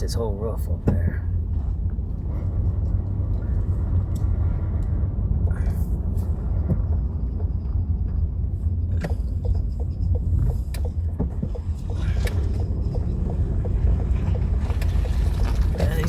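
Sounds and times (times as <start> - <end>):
vehicle rumbling along road: 0.0 - 16.0.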